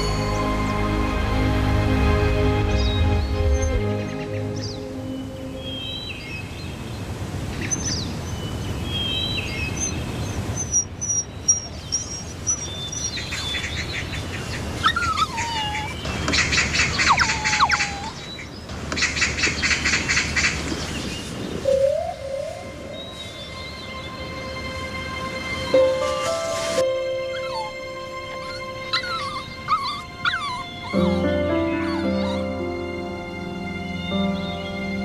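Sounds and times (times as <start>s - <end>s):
birds chirping and calling: 2.7s - 24.6s, 26.7s - 32.9s
bird trilling: 28.4s - 32.4s.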